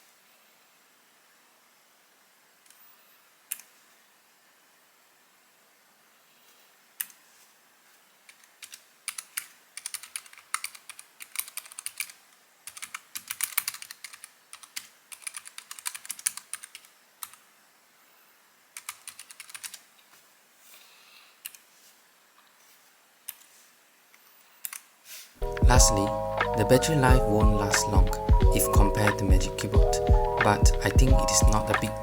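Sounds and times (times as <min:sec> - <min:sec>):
mechanical keyboard typing: 0:08.3 - 0:17.4, 0:18.8 - 0:19.9.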